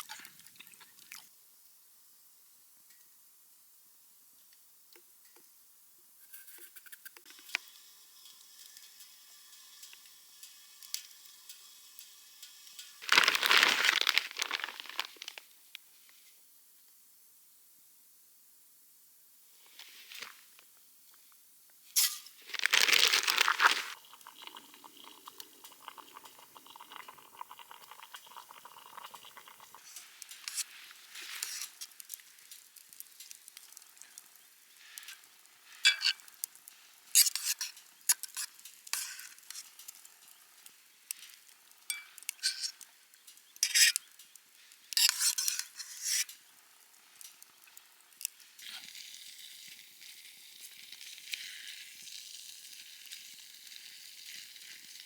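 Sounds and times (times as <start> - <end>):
food sizzling in a frying pan: 7.2 - 15.7, 21.8 - 55.0
utensil scraping and tapping pan: 45.0 - 46.4.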